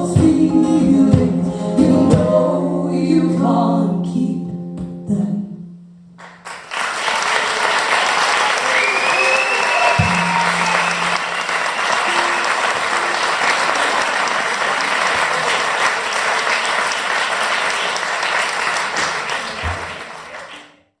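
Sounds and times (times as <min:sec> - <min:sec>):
audience applauding: 0:06.2 - 0:20.8.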